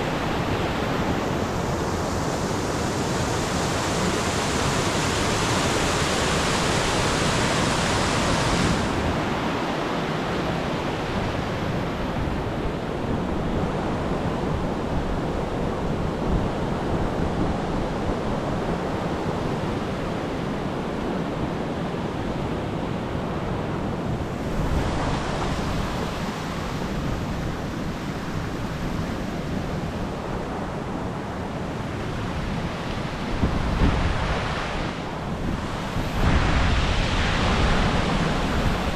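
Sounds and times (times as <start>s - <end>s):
stream rushing over rocks: 0.0s - 10.4s
wind buffeting microphone: 0.0s - 38.9s.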